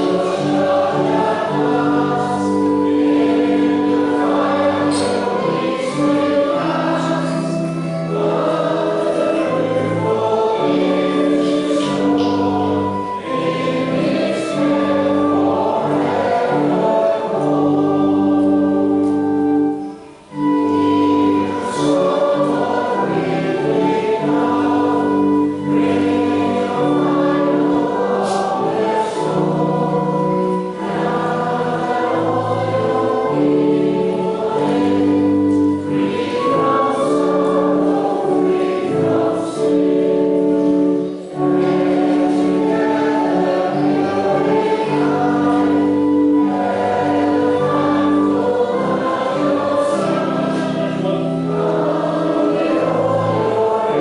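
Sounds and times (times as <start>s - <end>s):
choir singing a hymn: 0.0s - 54.0s.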